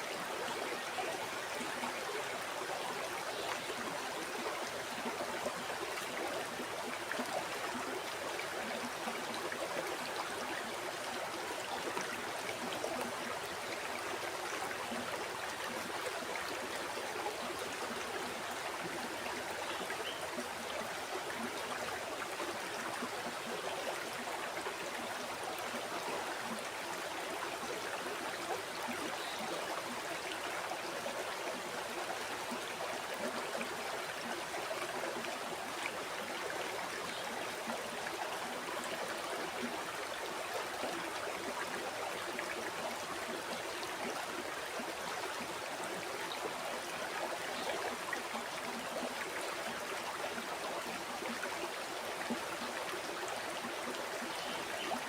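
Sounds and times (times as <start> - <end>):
river flowing over stones: 0.0 - 55.0.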